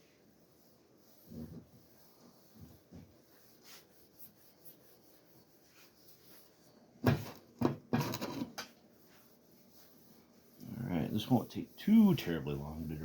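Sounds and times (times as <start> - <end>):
faint rubbing: 0.0 - 7.0, 8.0 - 13.0
rattling scrape: 8.0 - 8.6.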